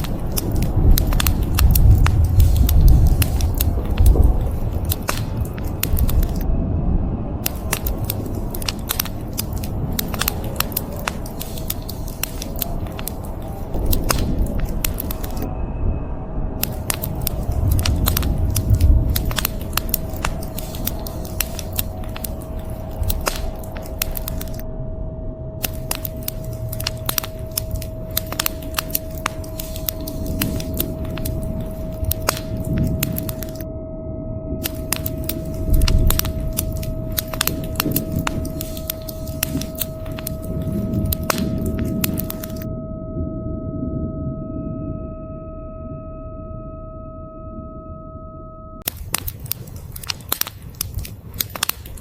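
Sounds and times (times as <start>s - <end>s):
rain hissing: 0.0s - 6.4s, 7.4s - 15.5s, 16.6s - 24.6s, 25.6s - 33.6s, 34.6s - 42.6s
wood fire crackling and popping: 0.0s - 6.5s, 7.4s - 15.5s, 16.6s - 24.6s, 25.6s - 33.7s, 34.6s - 42.7s, 48.8s - 52.0s
steady held tone: 16.6s - 52.0s.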